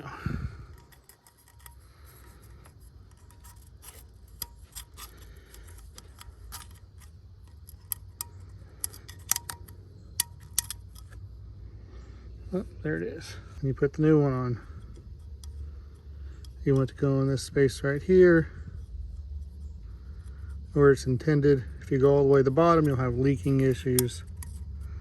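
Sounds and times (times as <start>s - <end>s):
small clicks and scraping: 0.0s - 11.4s, 13.3s - 25.0s
low background hum: 0.0s - 25.0s.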